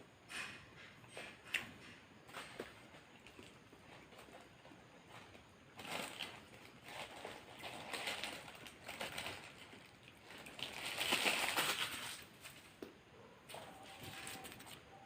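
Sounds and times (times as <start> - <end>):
paper wrapper crinkling: 5.7 - 12.8, 13.5 - 15.0.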